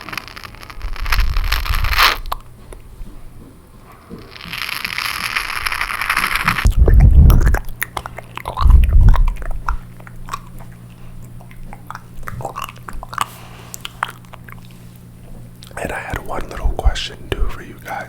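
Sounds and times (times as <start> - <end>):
wet lip and tongue clicks: 0.0 - 2.9, 4.4 - 16.7
hissing slurping mouth sounds: 4.2 - 14.9.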